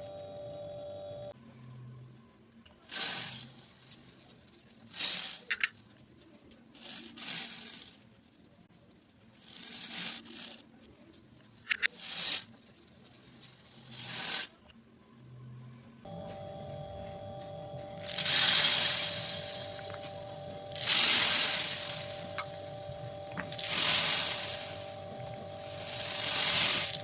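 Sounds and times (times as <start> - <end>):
beads pouring rattle: 6.8 - 8.0, 18.0 - 27.0.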